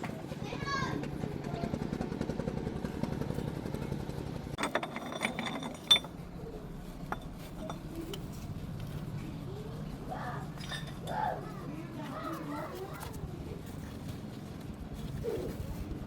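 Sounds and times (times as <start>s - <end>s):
steady low mechanical hum: 0.0s - 16.0s
sharp metallic clicks and clinks: 4.6s - 6.2s.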